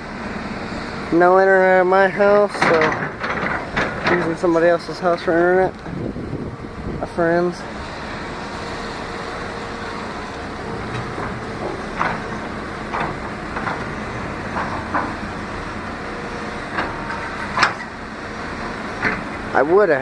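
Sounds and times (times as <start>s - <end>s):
demolition machinery running: 0.0s - 20.0s
sharp metal knocks and clanks: 2.5s - 4.7s, 10.9s - 15.2s, 16.7s - 18.0s.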